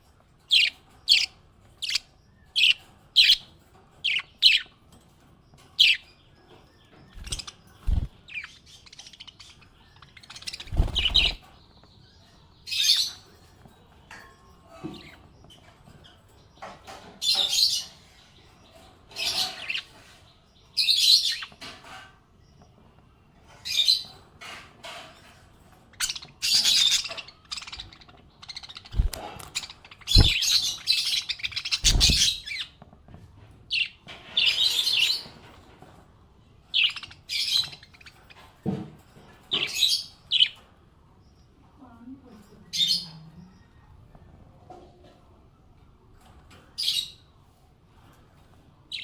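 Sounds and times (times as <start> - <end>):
parrots chirping: 7.1 - 11.5, 25.9 - 32.8, 36.7 - 38.4.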